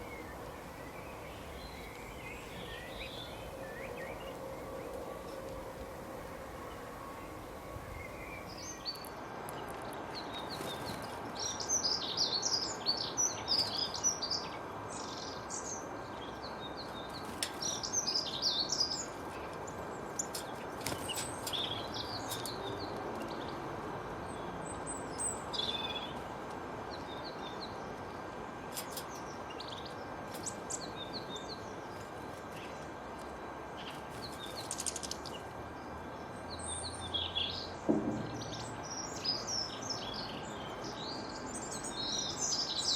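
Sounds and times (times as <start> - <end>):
songbirds chirping and singing: 0.0 - 26.2, 33.7 - 42.9
steady background hiss: 0.0 - 42.9.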